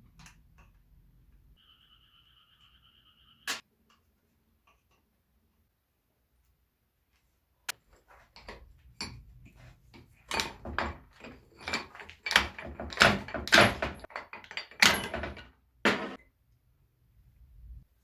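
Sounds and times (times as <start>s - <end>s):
metal gearbox parts clanking: 8.4s - 16.2s.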